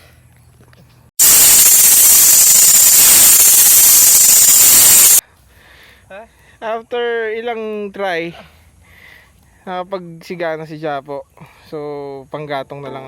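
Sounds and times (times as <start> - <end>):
white noise static: 1.2 - 5.2.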